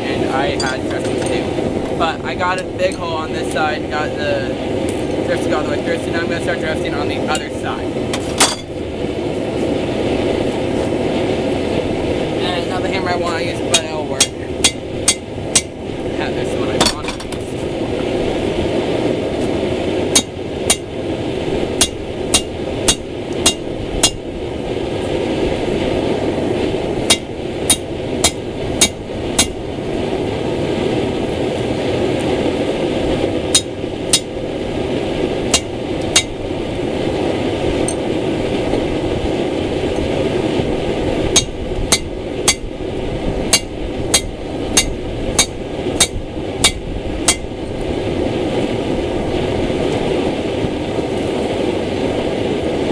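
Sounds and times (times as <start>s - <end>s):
forge rushing noise: 0.0s - 52.9s
hammer striking steel: 8.1s - 8.8s, 13.7s - 15.8s, 20.1s - 20.9s, 21.8s - 24.2s, 27.0s - 29.6s, 33.5s - 34.3s, 35.5s - 36.4s, 41.4s - 42.7s, 43.5s - 47.5s.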